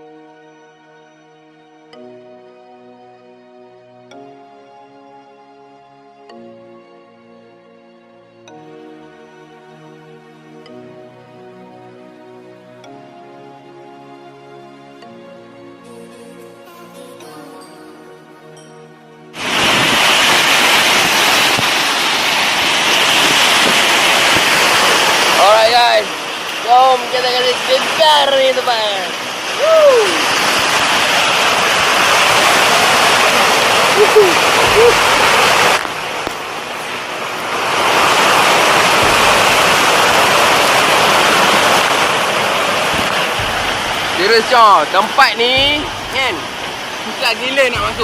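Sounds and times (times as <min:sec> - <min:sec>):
soft background music: 0:00.0 - 0:19.5, 0:23.7 - 0:32.9, 0:42.9 - 0:48.0
waterfall rushing: 0:19.4 - 0:48.0.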